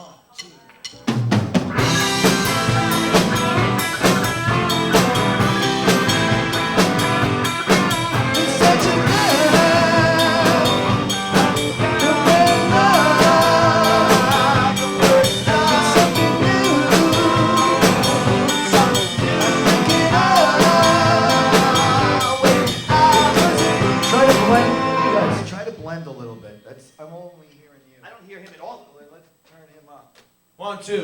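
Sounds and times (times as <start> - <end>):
drum kit beat: 0.4 - 26.2
guitars: 1.0 - 25.9
person singing: 7.7 - 25.5.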